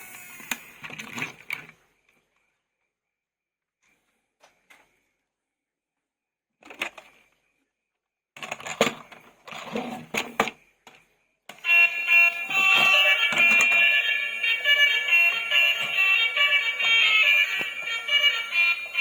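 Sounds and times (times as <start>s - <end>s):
plastic toy rustling and clicking: 8.4s - 10.5s, 12.4s - 19.0s
toy siren alarm over tune: 11.6s - 19.0s.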